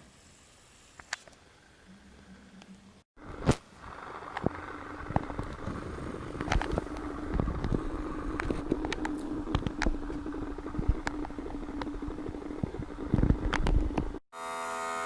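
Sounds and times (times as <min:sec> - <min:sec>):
air pump humming: 0:03.2 - 0:15.0
sharp clicks and crackles: 0:03.4 - 0:14.2.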